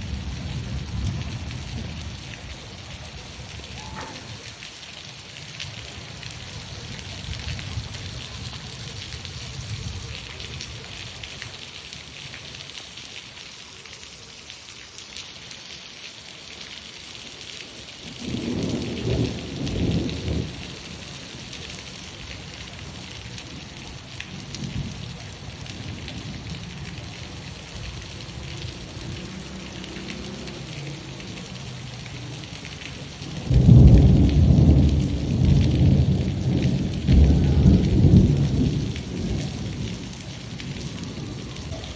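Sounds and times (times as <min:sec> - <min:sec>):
thunder rumbling: 0:00.0 - 0:04.7, 0:05.8 - 0:10.8, 0:18.0 - 0:29.2, 0:33.0 - 0:41.9
steady rain: 0:00.0 - 0:41.9.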